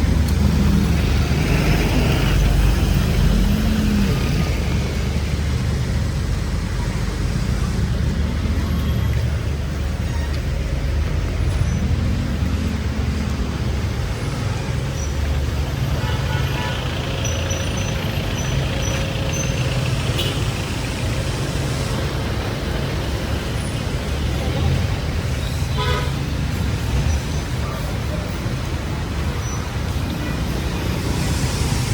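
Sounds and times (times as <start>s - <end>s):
vehicle engines rumbling: 0.0s - 31.9s
car horn tooting: 25.7s - 26.2s
rain hiss: 28.8s - 31.9s.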